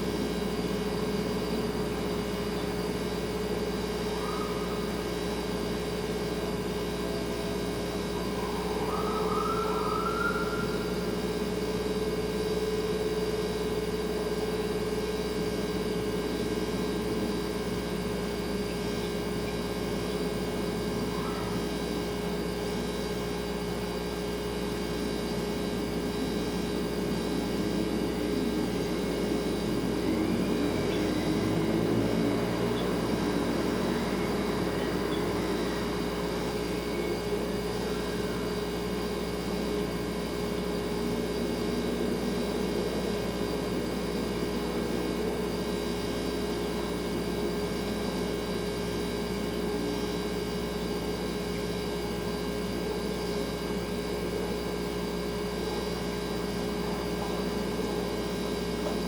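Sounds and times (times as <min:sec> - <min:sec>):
refrigerator humming: 0:00.0 - 0:59.0
faint whistling tones: 0:03.9 - 0:05.4, 0:06.9 - 0:12.6, 0:32.7 - 0:38.6.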